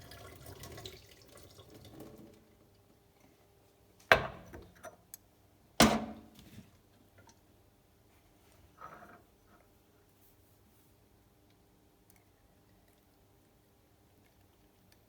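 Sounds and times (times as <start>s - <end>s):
water trickling: 0.0s - 2.9s.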